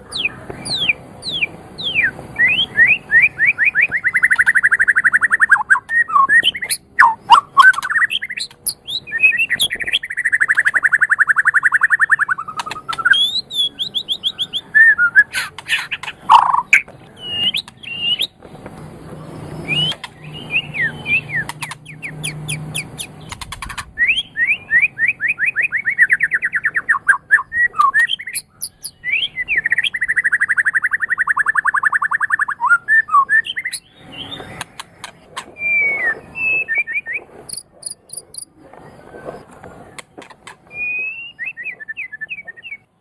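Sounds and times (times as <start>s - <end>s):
bird singing whistled trills: 0.0s - 18.4s, 19.5s - 23.1s, 24.0s - 34.5s, 35.6s - 38.5s, 40.7s - 42.9s
sharp clicks: 12.4s - 13.2s, 21.4s - 23.9s, 34.4s - 35.6s.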